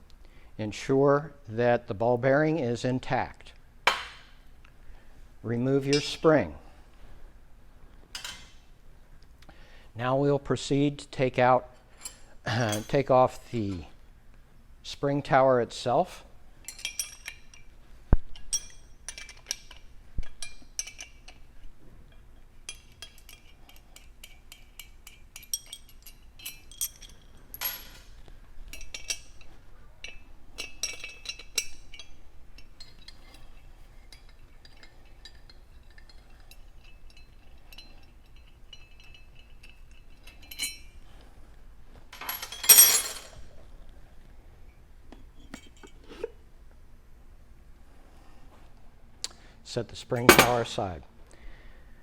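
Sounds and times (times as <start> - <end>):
metal tools clinking: 11.9 - 13.9, 16.7 - 17.7, 18.4 - 19.8, 22.7 - 28.1, 28.7 - 33.5, 34.1 - 41.0, 42.1 - 43.5, 50.1 - 50.8
metallic clatter: 50.2 - 50.7.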